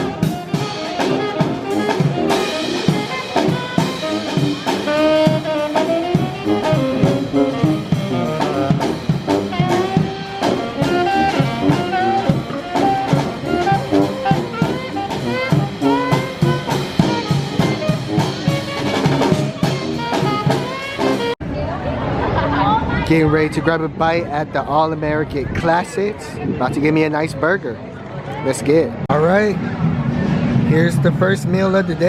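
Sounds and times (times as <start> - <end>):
drum kit beat: 0.0 - 21.4
horns playing melody: 0.0 - 21.4.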